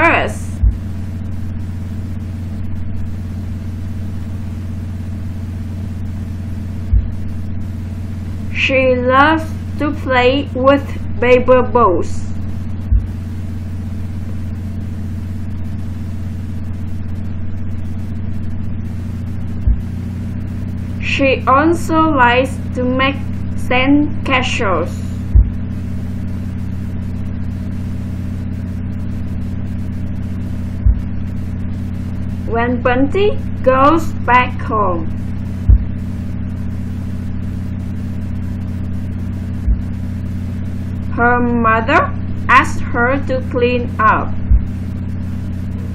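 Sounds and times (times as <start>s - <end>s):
steady low tonal hum: 0.0s - 45.9s
brief low thump: 0.5s - 1.4s, 6.8s - 7.6s, 12.4s - 14.6s, 19.5s - 20.4s, 25.2s - 25.8s, 30.7s - 31.4s, 35.3s - 36.6s, 39.6s - 40.0s.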